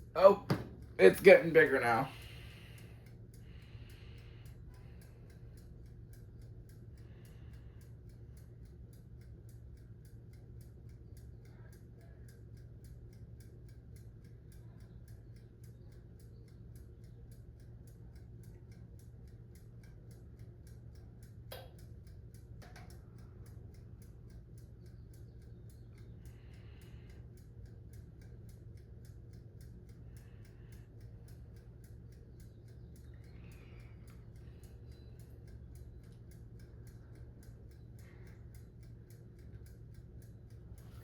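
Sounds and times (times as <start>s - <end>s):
dial timer ticking: 0.0s - 41.0s
low steady hum: 0.0s - 41.0s.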